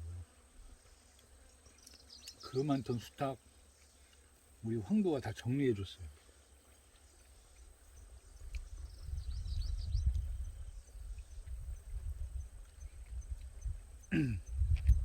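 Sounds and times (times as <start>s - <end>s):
wind on microphone: 8.4s - 15.0s.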